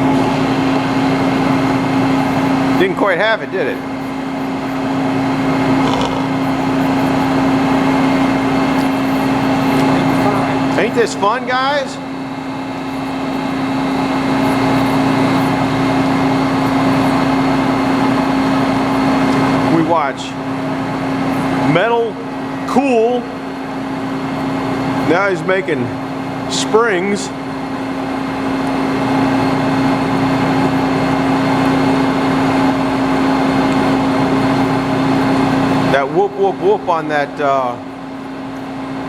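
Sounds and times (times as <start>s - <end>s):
rhythmic whooping from a lathe cut: 0.0s - 21.7s
lathe cutting steel grinding: 0.0s - 23.1s
metal lathe humming: 0.0s - 39.0s.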